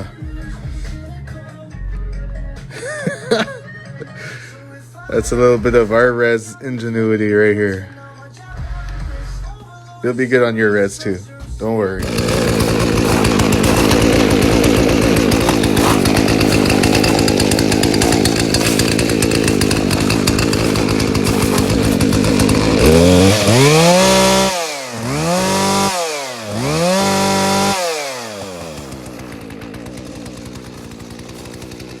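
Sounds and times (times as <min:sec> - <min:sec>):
chainsaw engine idling and revving: 0:12.0 - 0:32.0.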